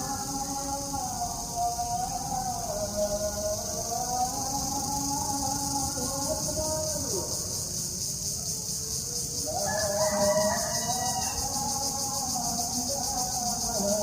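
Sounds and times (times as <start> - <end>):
rooster crowing: 9.4 - 11.8.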